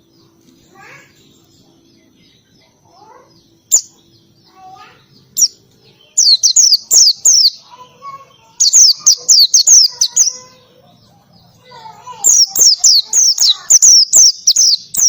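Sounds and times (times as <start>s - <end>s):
faint bird chirps: 0.0s - 15.0s
bird singing high notes: 3.1s - 10.7s, 11.9s - 15.0s.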